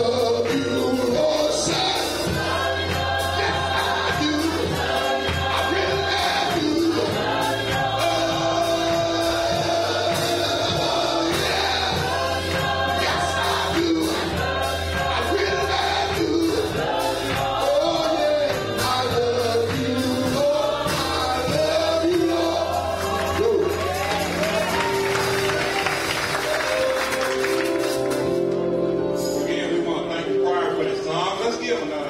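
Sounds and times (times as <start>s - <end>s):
gospel choir singing: 0.0s - 32.0s
drum beat: 1.0s - 26.6s.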